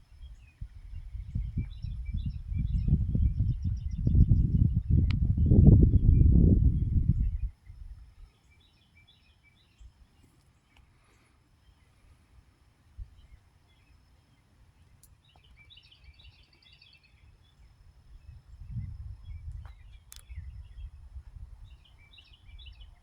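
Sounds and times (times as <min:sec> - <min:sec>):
low outdoor rumble: 0:00.0 - 0:08.3
songbird chirping: 0:00.0 - 0:23.0.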